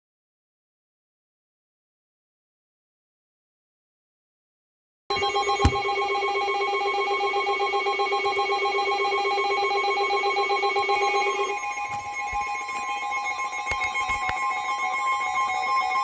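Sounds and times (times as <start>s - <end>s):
pulsing emergency alert tones: 5.1s - 13.6s.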